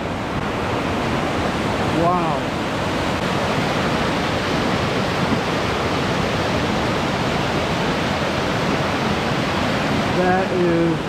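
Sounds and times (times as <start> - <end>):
river water rushing: 0.0 - 11.0.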